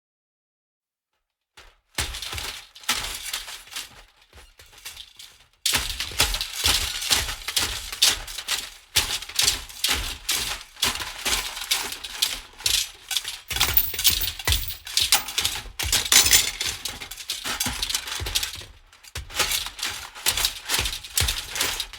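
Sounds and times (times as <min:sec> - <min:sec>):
loose metal pieces rattling: 0:13.5 - 0:16.8.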